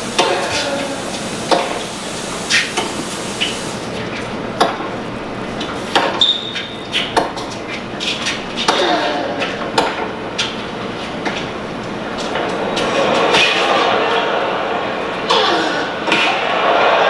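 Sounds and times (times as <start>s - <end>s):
broadcast hiss: 0.0s - 17.0s
crowd noise: 0.0s - 17.0s
shoe squeak: 5.8s - 9.6s.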